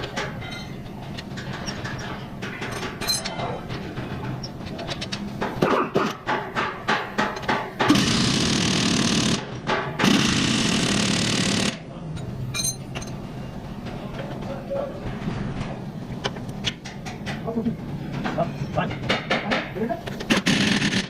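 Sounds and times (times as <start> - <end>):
impact wrench hammering: 6.2 - 11.7.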